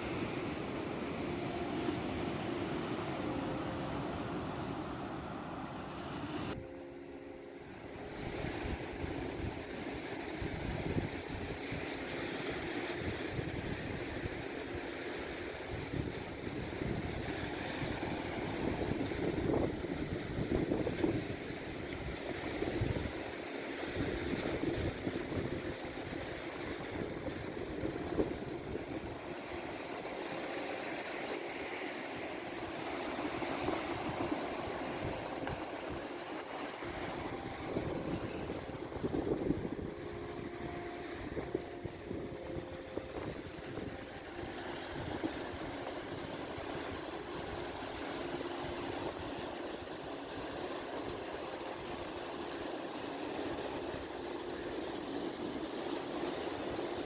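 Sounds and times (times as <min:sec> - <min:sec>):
sea waves on shore: 0:00.0 - 0:57.0
wind gusting on microphone: 0:08.0 - 0:30.8, 0:32.1 - 0:52.7.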